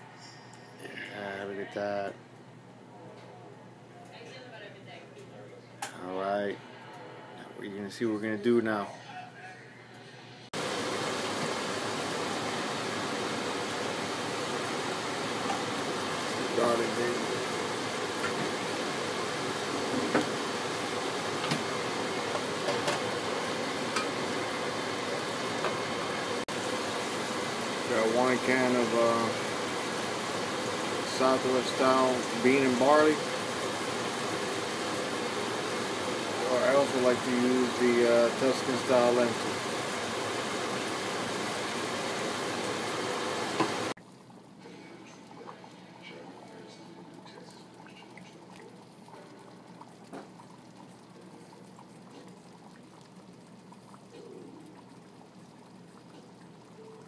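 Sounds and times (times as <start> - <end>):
steady hissing noise: 10.1 - 44.0.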